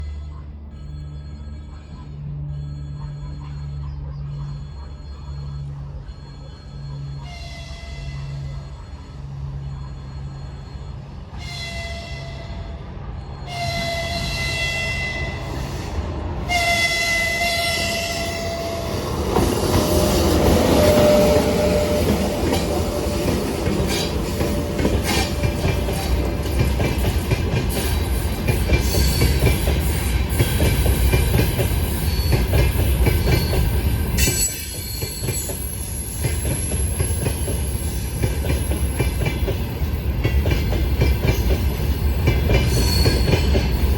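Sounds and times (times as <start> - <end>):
locomotive horn blasts: 11.3 - 12.8, 13.4 - 15.8, 16.4 - 19.1.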